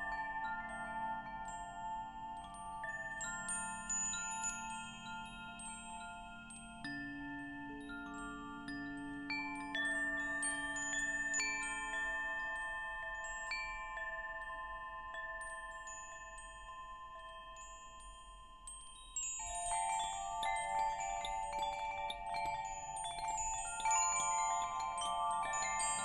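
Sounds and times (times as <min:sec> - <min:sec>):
wind chimes ringing: 0:09.2 - 0:26.0.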